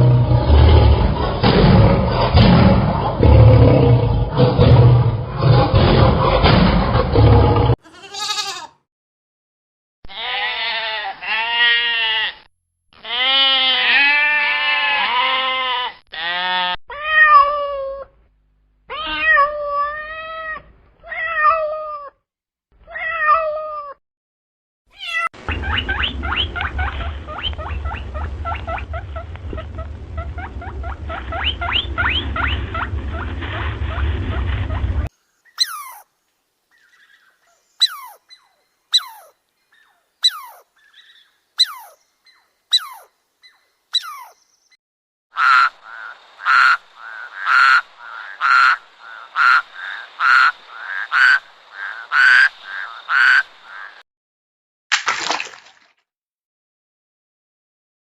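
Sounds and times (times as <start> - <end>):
cat meowing: 7.8 - 8.7, 18.9 - 22.1, 22.8 - 24.0, 24.9 - 25.3
steady low noise: 25.4 - 35.1.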